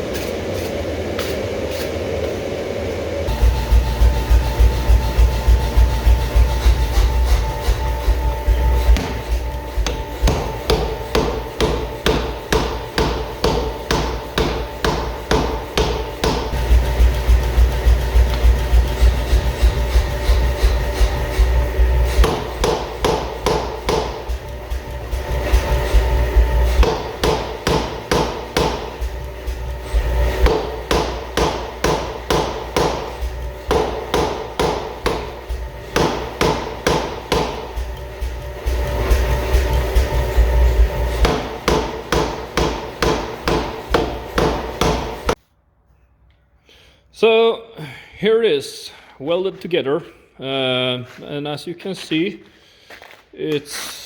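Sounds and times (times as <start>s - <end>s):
steady hum: 0.0s - 45.4s
low steady rumble: 3.2s - 42.9s
hammer ringing on anvil: 3.5s - 38.0s, 38.8s - 45.4s.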